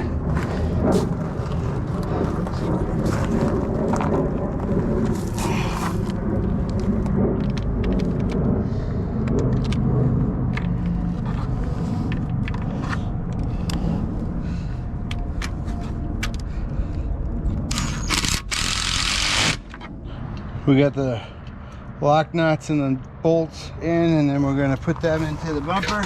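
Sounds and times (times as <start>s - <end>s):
low engine rumble: 0.0s - 18.3s.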